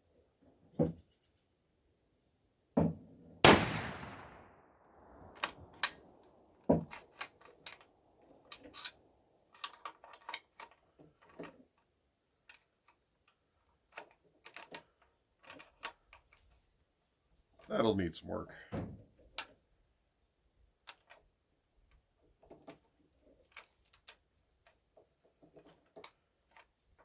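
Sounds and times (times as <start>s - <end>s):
rifle shot echoing: 3.4s - 5.6s
rifle bolt clicking and clacking: 5.3s - 11.6s.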